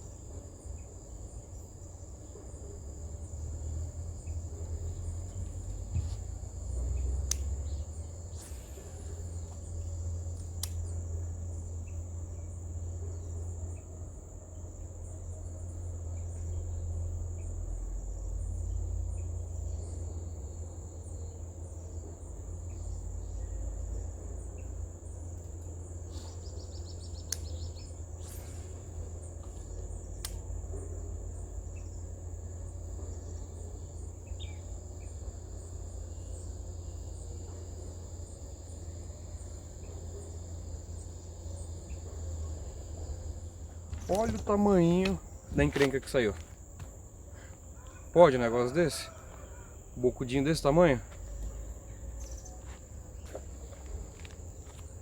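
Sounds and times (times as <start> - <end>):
constant low rumble: 0.0 - 55.0
insects high-pitched drone: 0.0 - 55.0.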